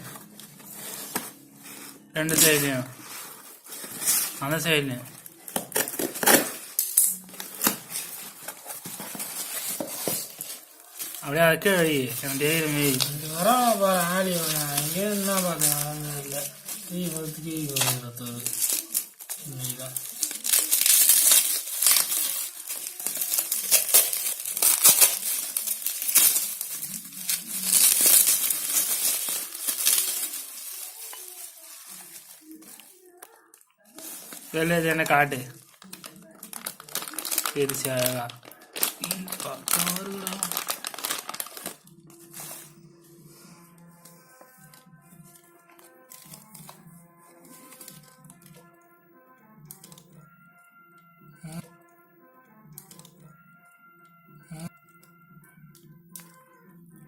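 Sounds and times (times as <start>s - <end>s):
packaging crinkling and tearing: 0.0s - 42.8s, 44.4s - 46.8s, 47.4s - 48.8s.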